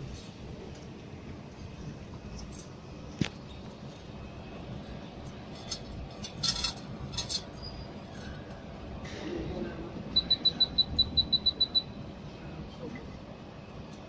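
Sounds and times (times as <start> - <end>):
short high beeps: 10.2 - 12.0.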